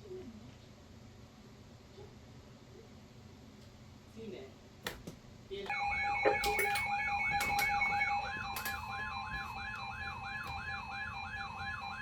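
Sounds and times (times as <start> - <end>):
warbling emergency alert tone: 5.7 - 12.0.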